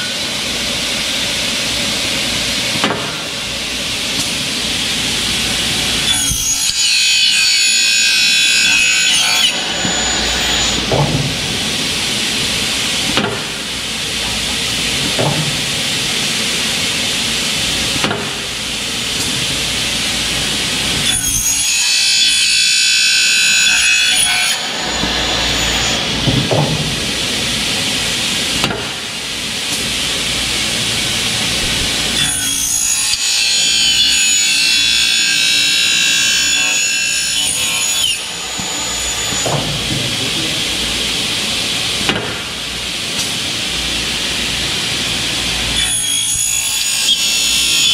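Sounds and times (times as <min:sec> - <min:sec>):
saw cutting aluminium screech: 0:06.0 - 0:10.9, 0:21.0 - 0:26.2, 0:32.2 - 0:39.5, 0:45.8 - 0:47.9.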